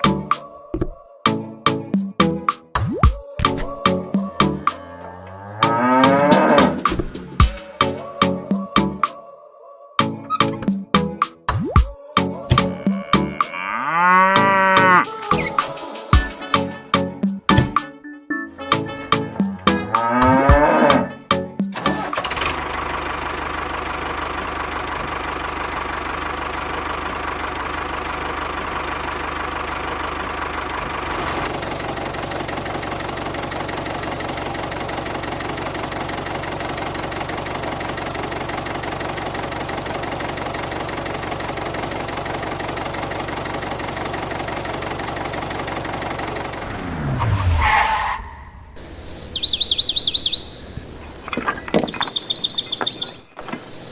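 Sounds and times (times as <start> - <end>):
small engine running: 21.8 - 47.6.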